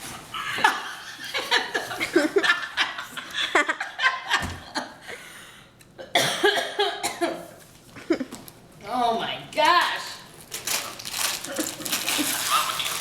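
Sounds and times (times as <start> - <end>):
people laughing: 0.4 - 5.0.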